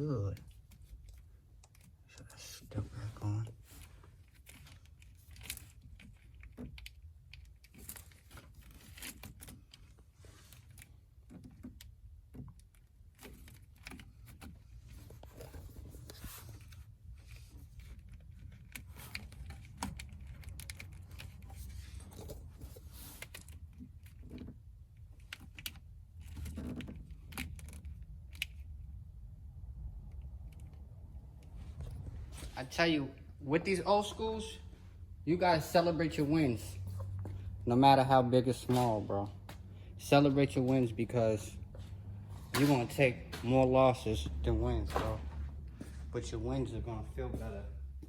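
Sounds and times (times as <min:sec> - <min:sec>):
parts clicking and rattling: 0:03.7 - 0:32.5, 0:36.2 - 0:45.9.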